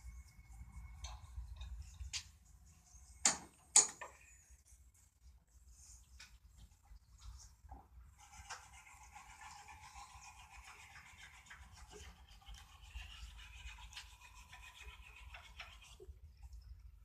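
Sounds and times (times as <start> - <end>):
wire brush scratching on steel: 8.2 - 16.1.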